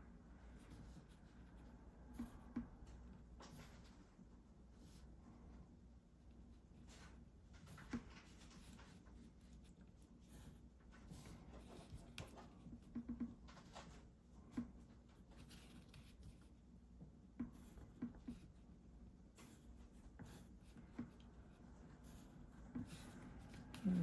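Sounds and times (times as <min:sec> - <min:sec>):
pen scratching on paper: 0:07.7 - 0:13.2, 0:14.5 - 0:16.6, 0:17.4 - 0:18.7, 0:19.3 - 0:24.0.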